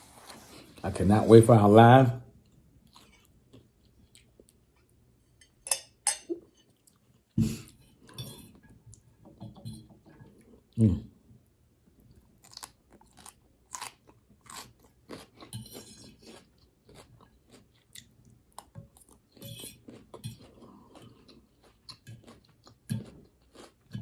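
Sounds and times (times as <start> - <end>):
crunchy salad chewing: 12.4 - 24.0.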